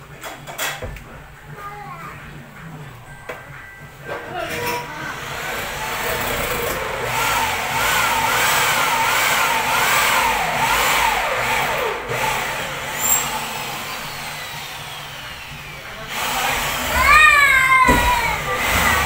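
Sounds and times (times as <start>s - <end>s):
motor running with wavering pitch: 5.1s - 19.0s.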